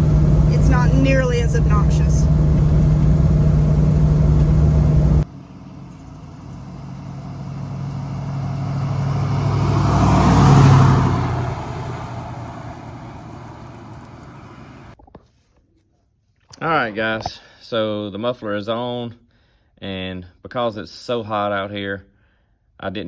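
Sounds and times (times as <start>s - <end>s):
engine drone inside car: 0.0s - 15.0s
vehicle driving past: 0.0s - 15.0s.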